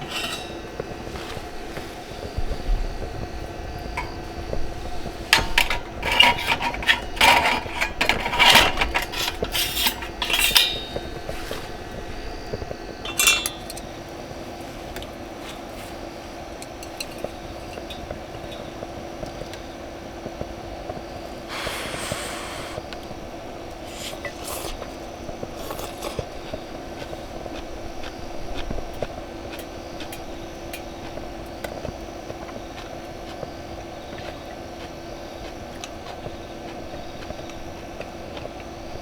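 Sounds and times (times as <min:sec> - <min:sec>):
cookware clicks and clinks: 0:00.0 - 0:00.7, 0:05.3 - 0:11.3, 0:13.0 - 0:13.9, 0:16.6 - 0:18.6
steady hum: 0:00.0 - 0:39.0
short hiss: 0:21.5 - 0:22.8.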